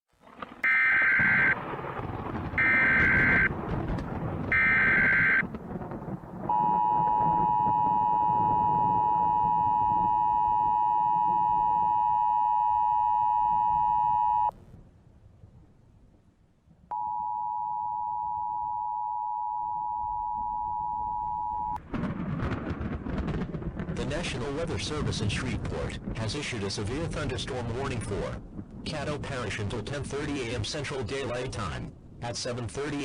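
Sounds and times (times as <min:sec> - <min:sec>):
data burst tones: 0:00.6 - 0:01.6, 0:02.6 - 0:03.5, 0:04.5 - 0:05.4, 0:06.5 - 0:14.5
two-tone attention signal: 0:06.5 - 0:14.5, 0:16.9 - 0:21.8.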